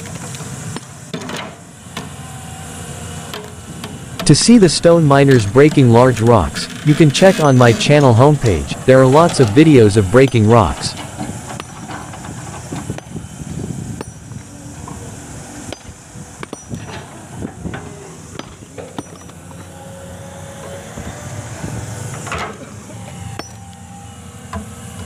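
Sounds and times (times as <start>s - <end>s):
excavator diesel engine running: 0.0s - 25.0s.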